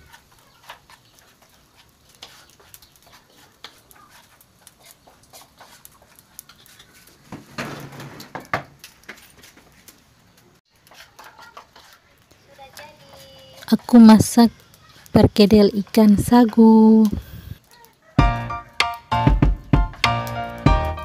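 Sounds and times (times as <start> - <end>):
clatter of knocks: 7.3 - 9.2
kitchen things clicking and knocking: 10.8 - 14.5.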